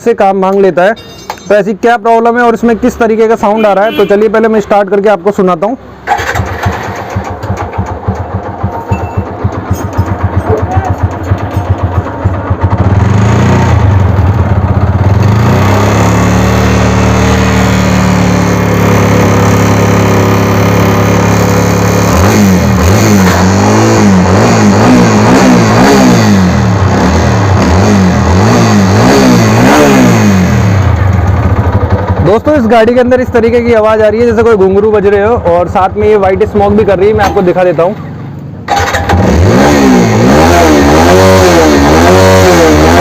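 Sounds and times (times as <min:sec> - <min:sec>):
motorcycle engine revving: 0:06.0 - 0:43.0
engine jingling rattle: 0:06.1 - 0:12.5.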